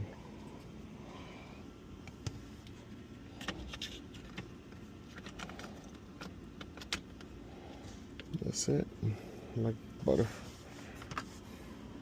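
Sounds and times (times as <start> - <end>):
small parts clicking and rattling: 3.4 - 7.3.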